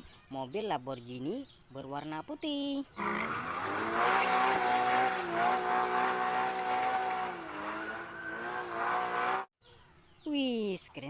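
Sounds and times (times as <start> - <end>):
racing car engine at high revs: 3.0 - 9.5.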